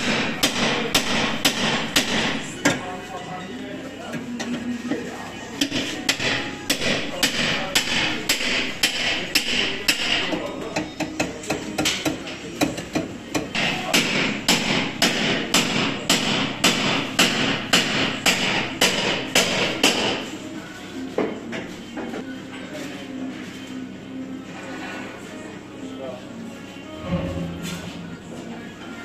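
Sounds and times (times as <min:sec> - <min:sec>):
hammer striking metal: 0:00.0 - 0:02.4, 0:13.4 - 0:20.2.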